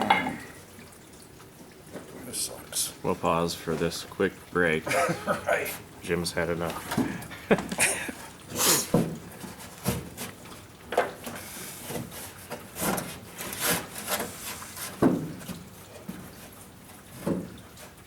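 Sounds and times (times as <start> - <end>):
rubbing and scraping: 7.7 - 10.6, 11.2 - 18.0.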